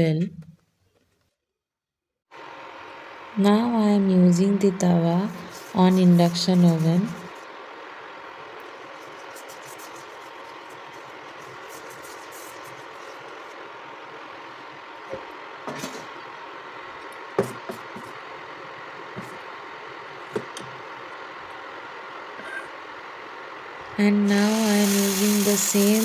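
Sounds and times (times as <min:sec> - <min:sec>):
cooktop fan hum: 0:02.3 - 0:26.0.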